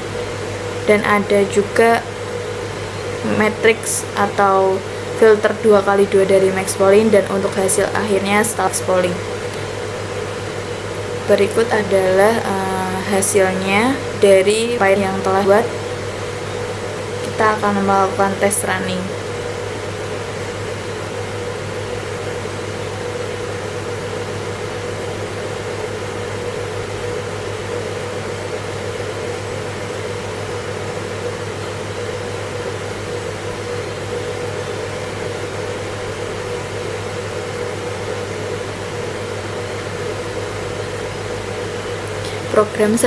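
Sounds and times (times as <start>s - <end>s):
higher hum: 0.0s - 23.0s.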